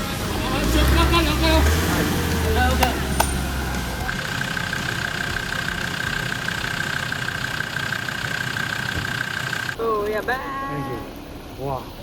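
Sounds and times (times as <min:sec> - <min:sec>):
off-road vehicle engine rumbling: 0:00.0 - 0:10.2.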